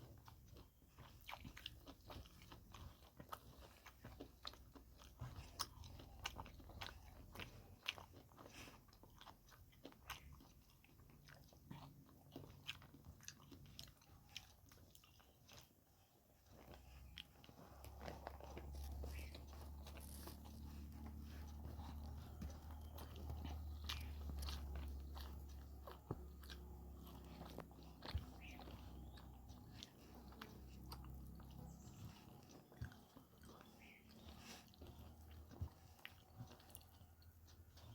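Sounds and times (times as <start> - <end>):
chewing and mouth sounds: 0.0 - 37.9
steady low hum: 16.5 - 37.9.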